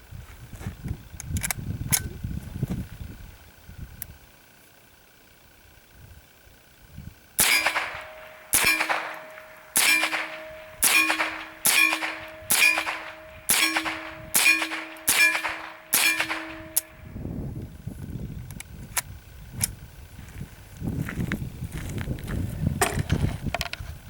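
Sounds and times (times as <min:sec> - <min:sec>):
rifle shots: 0:07.4 - 0:17.0
steel target clanging: 0:07.4 - 0:17.0.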